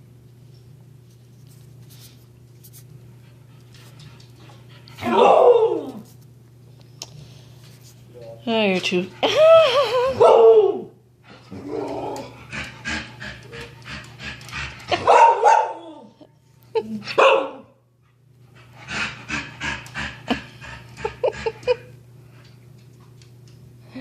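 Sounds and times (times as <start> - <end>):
dog panting rapidly: 12.3 - 15.0, 18.5 - 21.9
dog barking: 15.0 - 15.8, 17.2 - 17.7.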